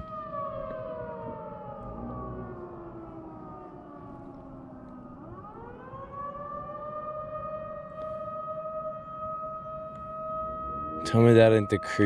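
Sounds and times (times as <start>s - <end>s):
person speaking: 11.0s - 12.0s.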